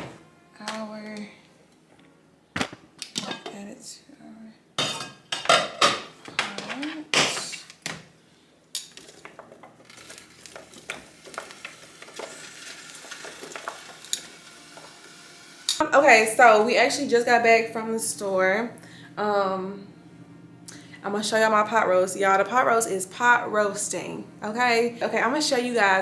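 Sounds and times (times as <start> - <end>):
pot and utensils clattering: 2.6 - 3.6, 4.8 - 8.0, 8.8 - 14.3
food simmering hiss: 9.8 - 16.6.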